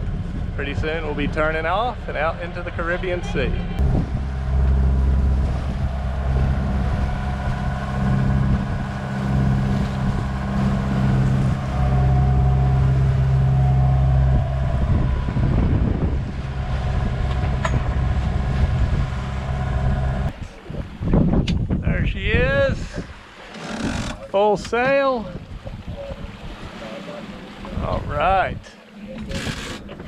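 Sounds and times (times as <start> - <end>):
diesel engine humming: 0.0 - 20.6.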